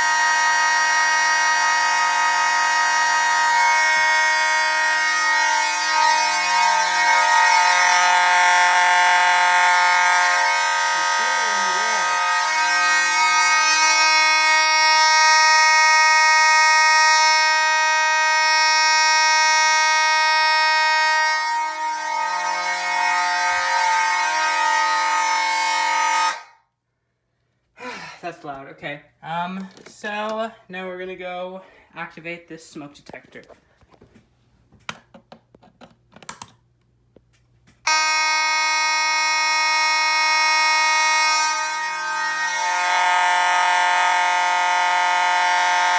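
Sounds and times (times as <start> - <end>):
fire alarm horns blaring: 0.0 - 26.8, 37.8 - 45.9.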